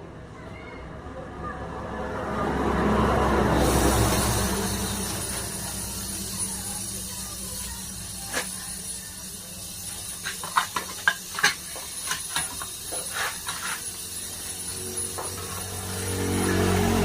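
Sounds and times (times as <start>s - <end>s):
tools clicking and knocking: 9.9s - 15.6s.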